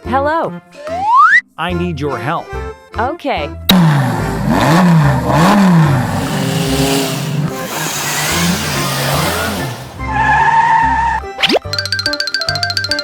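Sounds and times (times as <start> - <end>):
car engine revving: 3.7 - 10.6.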